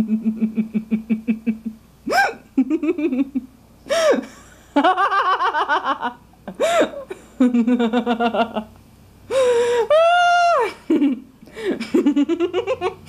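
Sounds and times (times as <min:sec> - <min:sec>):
comic whoops: 0:09.9 - 0:10.7.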